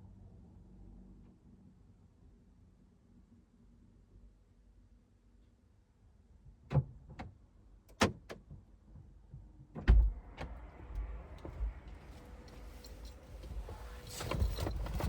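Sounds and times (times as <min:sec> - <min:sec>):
clicks and knocks in a car: 0:06.6 - 0:15.0
steady low rumble: 0:09.9 - 0:15.0.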